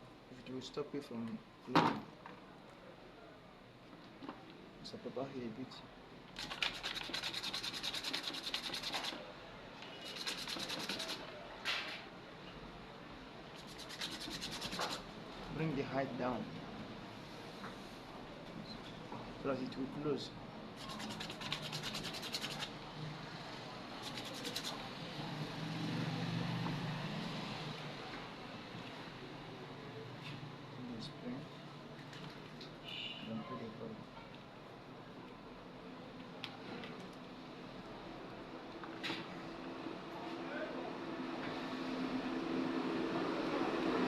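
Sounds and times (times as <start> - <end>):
sandpaper rubbing by hand: 6.4 - 9.2, 10.0 - 11.2, 13.6 - 15.0, 20.8 - 22.7, 24.0 - 24.8.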